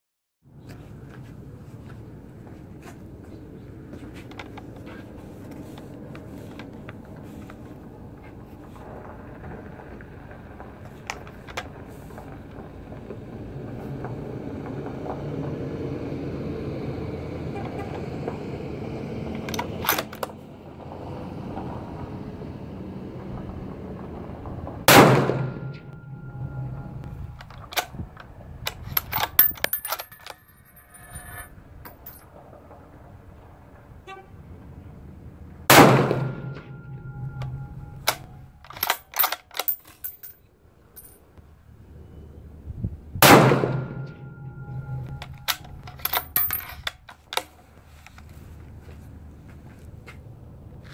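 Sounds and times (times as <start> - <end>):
low steady background noise: 23.0 - 50.9
rifle shot: 24.9 - 25.8, 35.7 - 36.6, 43.2 - 44.1
metallic clicks and clinks: 27.4 - 32.3, 36.6 - 41.2, 45.0 - 47.6.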